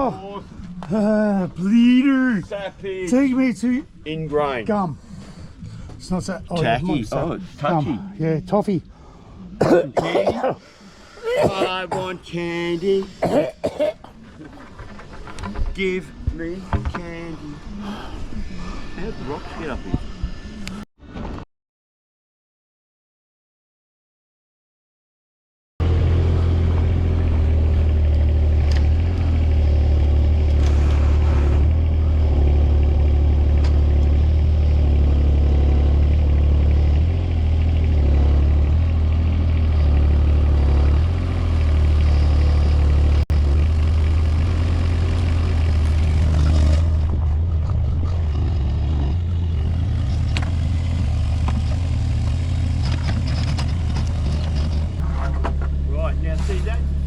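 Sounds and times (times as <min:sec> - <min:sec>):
engine humming steadily: 0:25.8 - 0:57.0.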